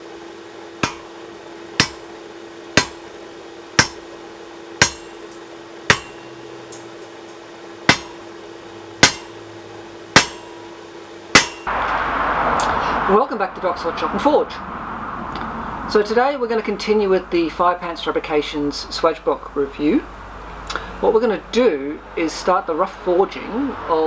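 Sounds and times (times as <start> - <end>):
faint steady hum: 0.0 - 24.0
hammer striking metal on anvil: 0.8 - 1.2, 1.8 - 2.2, 2.8 - 3.2, 3.8 - 4.2, 4.8 - 9.4, 10.1 - 10.7, 11.3 - 11.8.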